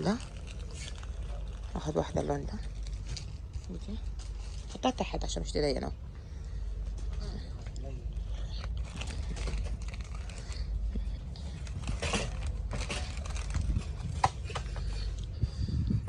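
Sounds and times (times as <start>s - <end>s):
steady low rumble: 0.0s - 16.0s
items clicking and knocking: 8.6s - 15.3s.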